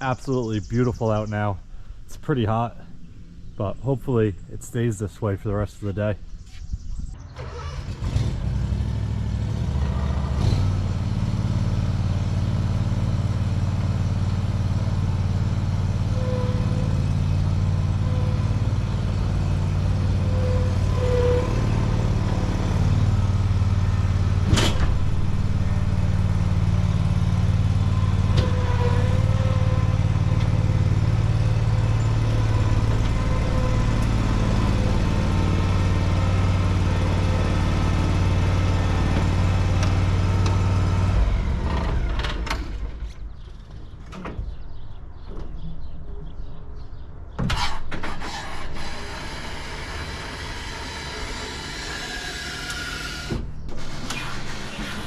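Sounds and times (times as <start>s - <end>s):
pickup truck engine running: 8.4s - 42.3s.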